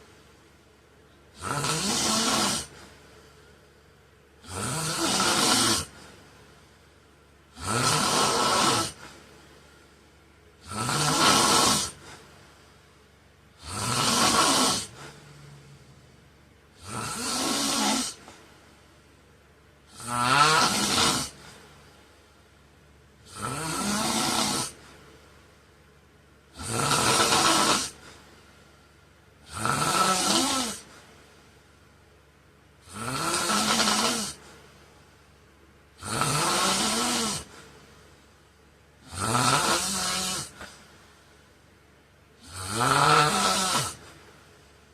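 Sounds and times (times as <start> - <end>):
man snoring loudly: 1.3 - 2.8, 4.4 - 6.0, 7.5 - 9.1, 10.6 - 12.2, 13.6 - 15.6, 16.8 - 18.3, 19.9 - 21.4, 23.2 - 24.8, 26.5 - 28.0, 29.4 - 30.9, 32.8 - 34.4, 36.0 - 37.6, 39.0 - 40.7, 42.4 - 44.0.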